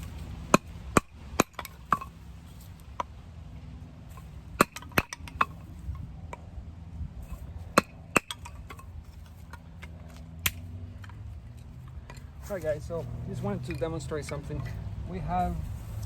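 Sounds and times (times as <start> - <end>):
knife striking sticks: 4.1 - 5.7, 7.3 - 11.2.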